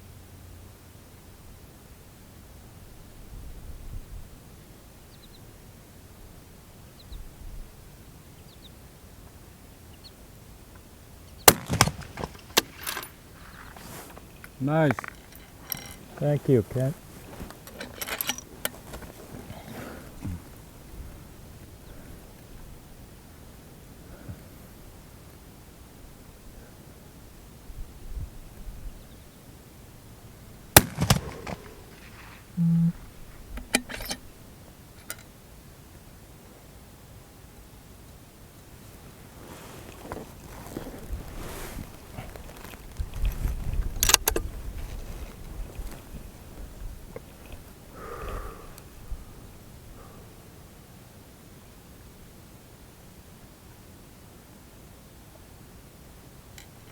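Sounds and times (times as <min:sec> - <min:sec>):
rifle shot: 0:11.5 - 0:12.7, 0:30.8 - 0:31.9
rifle bolt clicks and rattles: 0:11.5 - 0:13.8, 0:14.4 - 0:16.1, 0:17.5 - 0:19.3, 0:33.6 - 0:34.2, 0:43.2 - 0:44.5
short low buzz: 0:32.6 - 0:33.1.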